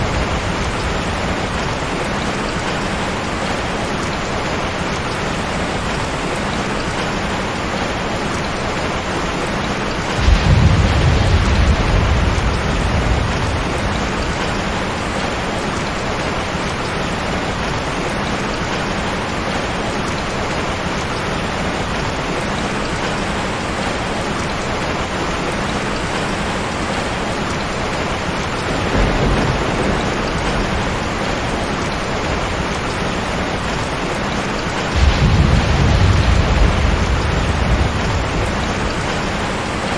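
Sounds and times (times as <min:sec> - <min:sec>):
thunder rumbling: 0:00.0 - 0:06.2, 0:08.7 - 0:18.0, 0:23.8 - 0:39.9
heavy rain falling: 0:00.0 - 0:39.9.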